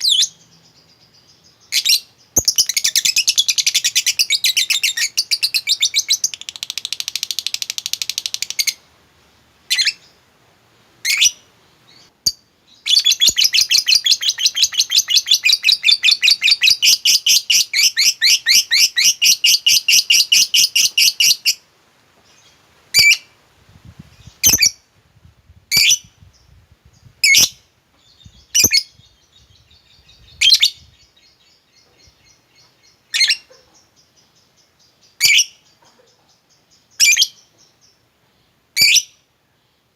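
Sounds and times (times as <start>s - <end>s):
sharp bird chirps: 0.0s - 8.8s.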